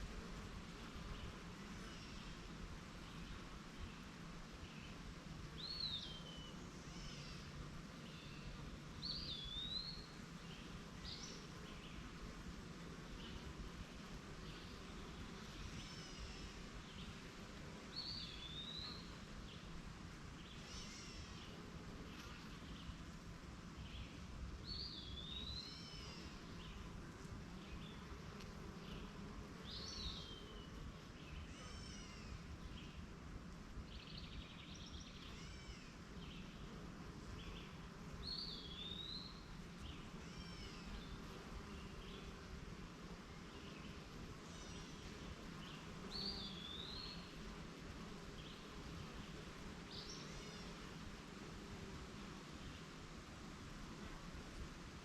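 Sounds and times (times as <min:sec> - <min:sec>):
honeybees humming: 0:00.0 - 0:55.0
small birds chirping: 0:43.4 - 0:47.4.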